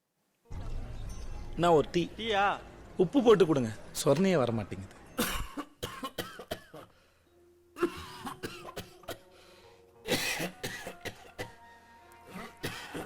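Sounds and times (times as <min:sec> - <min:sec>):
person coughing: 0:05.2 - 0:06.9, 0:07.8 - 0:09.2, 0:10.1 - 0:11.6, 0:12.3 - 0:13.0.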